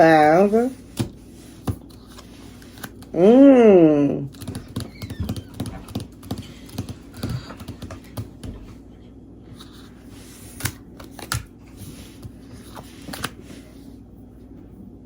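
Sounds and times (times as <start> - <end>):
playing cards tapping on table: 4.4 - 8.6.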